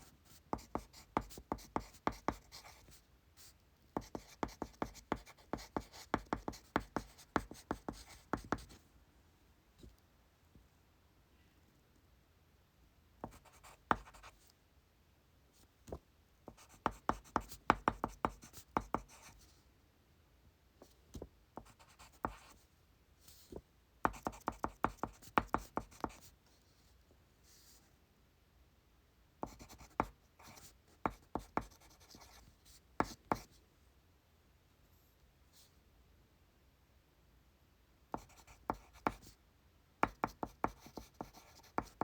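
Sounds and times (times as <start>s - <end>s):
pencil writing on paper: 0.2s - 3.0s, 4.0s - 8.8s, 13.2s - 14.3s, 16.5s - 19.3s, 21.6s - 22.5s, 24.1s - 26.3s, 29.4s - 32.4s, 38.1s - 39.3s, 40.0s - 42.0s.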